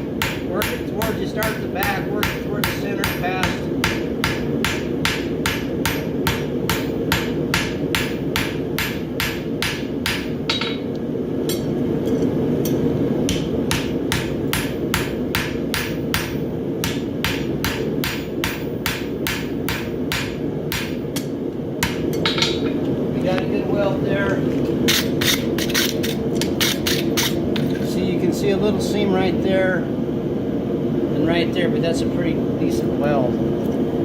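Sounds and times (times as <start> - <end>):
hammer striking metal on anvil: 0.0 - 10.9, 11.5 - 22.8
steady hum: 0.0 - 34.0.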